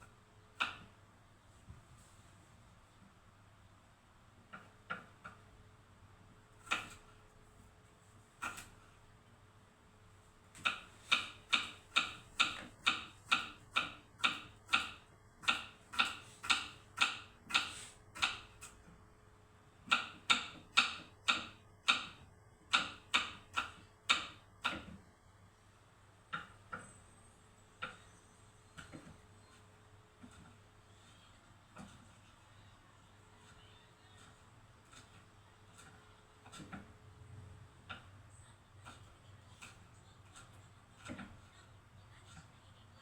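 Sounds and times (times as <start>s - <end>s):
knife chopping on cutting board: 10.6s - 18.6s, 35.8s - 36.9s.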